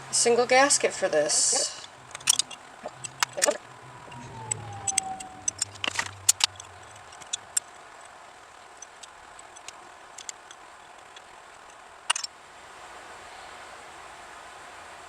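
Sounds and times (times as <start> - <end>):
background hiss: 0.0 - 15.0
small parts clicking and knocking: 1.6 - 12.3
clatter of quick clicks: 1.8 - 8.2.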